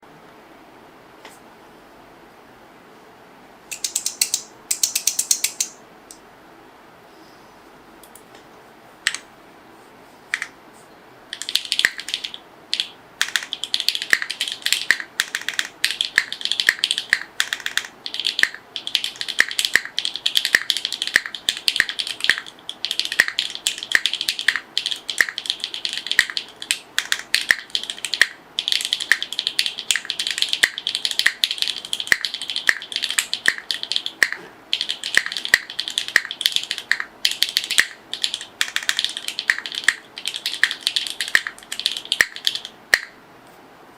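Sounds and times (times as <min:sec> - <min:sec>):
mechanical keyboard typing: 0:03.7 - 0:05.8, 0:11.3 - 0:43.1.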